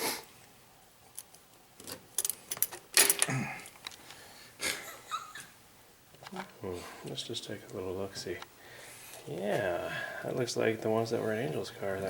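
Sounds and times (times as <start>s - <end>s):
metal tools clattering: 1.8s - 3.3s.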